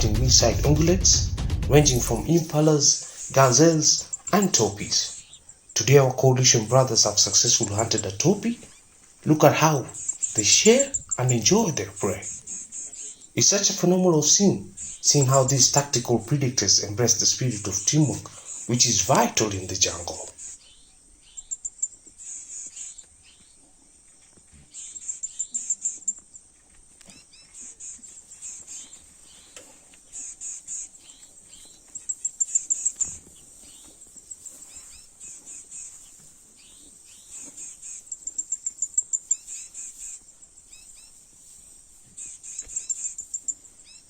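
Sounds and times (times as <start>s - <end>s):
insects trilling in pulsed bursts: 0.0s - 8.6s, 9.3s - 20.6s.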